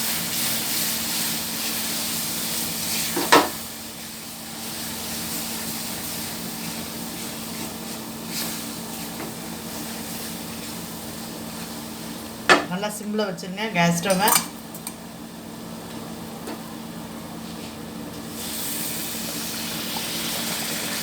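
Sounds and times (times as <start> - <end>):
flour sizzling in a pan: 0.0 - 12.3, 17.4 - 21.0.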